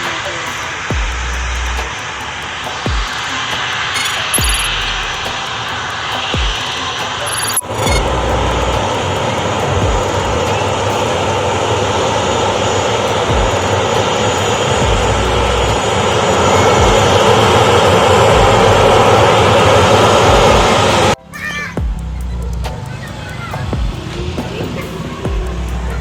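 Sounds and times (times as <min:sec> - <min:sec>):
jet engines running: 0:00.0 - 0:21.2.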